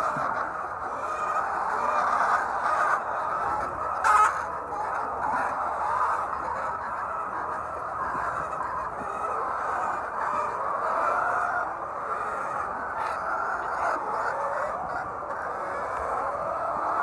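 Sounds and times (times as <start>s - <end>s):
hens clucking: 0.0s - 17.0s.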